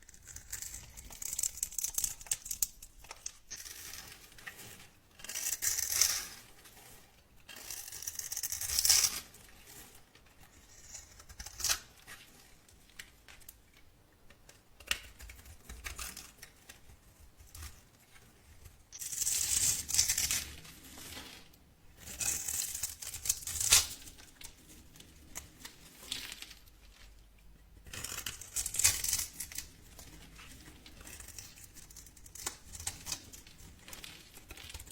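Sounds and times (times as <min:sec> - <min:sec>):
dry soap crackling: 0:00.0 - 0:34.9.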